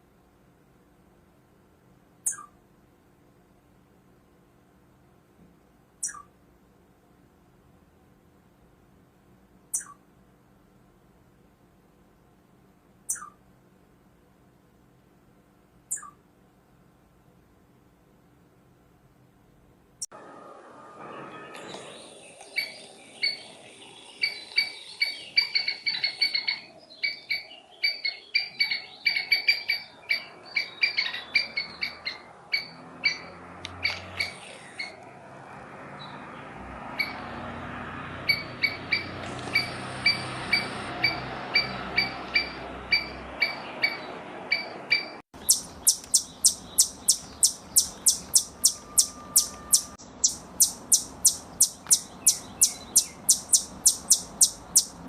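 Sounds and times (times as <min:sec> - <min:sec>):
squirrel chirping: 0:02.2 - 0:02.6, 0:06.0 - 0:06.4, 0:09.7 - 0:10.0, 0:13.0 - 0:13.4, 0:15.9 - 0:16.2, 0:22.4 - 0:35.0, 0:38.3 - 0:55.0.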